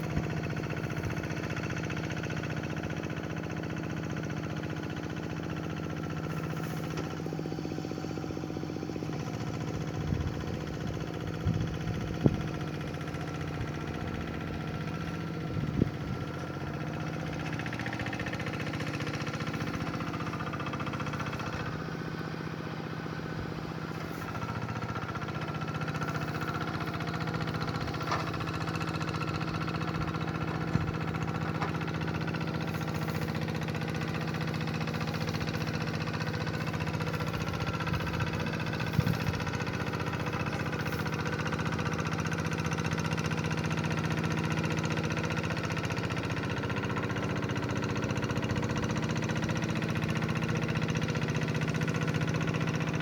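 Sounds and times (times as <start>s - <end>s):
hand tractor engine running: 0.0s - 53.0s.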